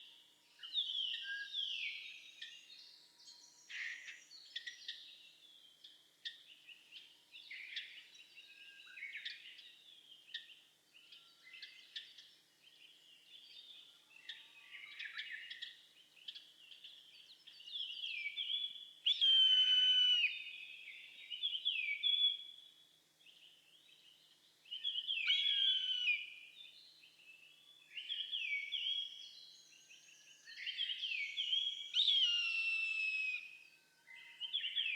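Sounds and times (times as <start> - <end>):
birds whistling and calling: 0.6 - 5.2, 13.4 - 22.6, 24.7 - 26.7, 27.5 - 34.9.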